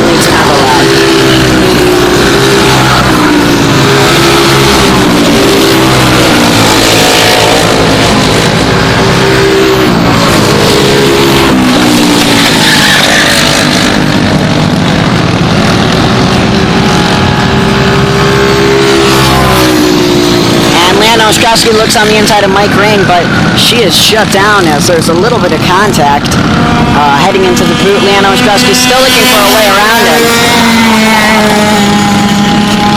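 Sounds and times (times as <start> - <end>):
kart engines racing: 0.0 - 32.9.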